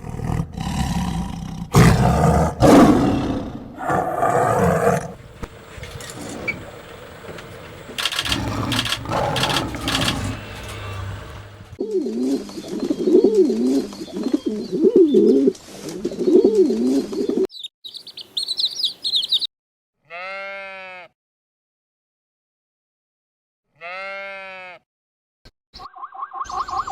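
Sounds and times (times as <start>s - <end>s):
pigeon cooing: 8.0s - 10.4s
wavering animal call: 8.0s - 10.9s
small birds chirping: 12.0s - 19.5s.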